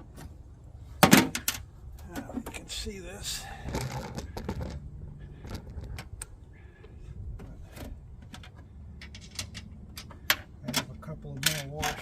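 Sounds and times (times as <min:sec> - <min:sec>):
low steady rumble: 0:00.0 - 0:12.0
metal hardware clicks and knocks: 0:07.7 - 0:12.0.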